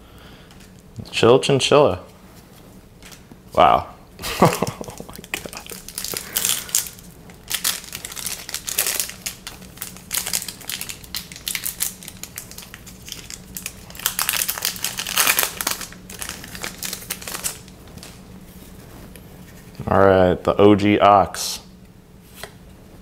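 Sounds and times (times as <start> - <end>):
foil wrapper crinkling: 4.4 - 18.8.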